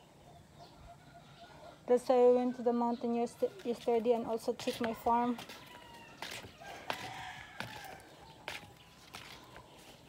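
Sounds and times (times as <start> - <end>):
sharp footsteps: 4.5 - 10.0.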